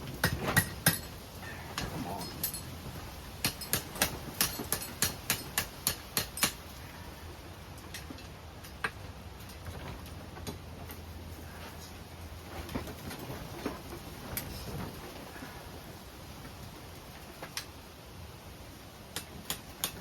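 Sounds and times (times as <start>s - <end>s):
low steady hum: 0.0s - 20.0s
hammer striking hot metal: 0.2s - 1.1s, 3.4s - 6.6s.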